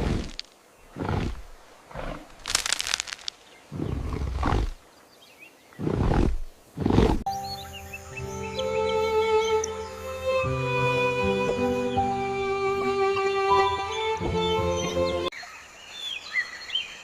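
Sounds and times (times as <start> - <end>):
animal roars: 3.7 - 4.8
music: 7.3 - 15.3.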